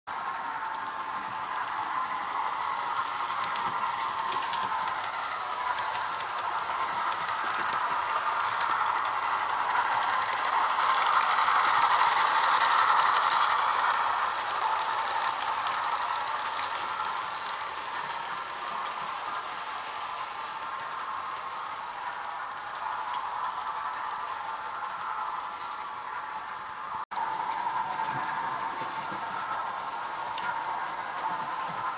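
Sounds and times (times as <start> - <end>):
model train sound effects: 0.1 - 31.9
model train wheels rattling on rail: 0.1 - 31.9.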